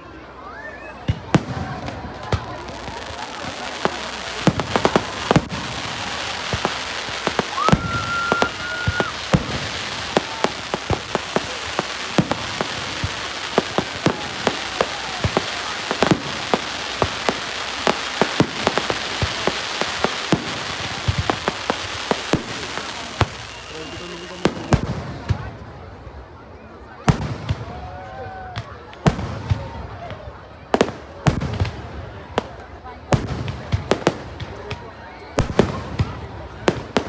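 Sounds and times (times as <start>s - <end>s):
fireworks bangs and pops: 0.1s - 37.0s
crackling hiss: 0.9s - 25.2s
firework whistle: 3.6s - 24.8s.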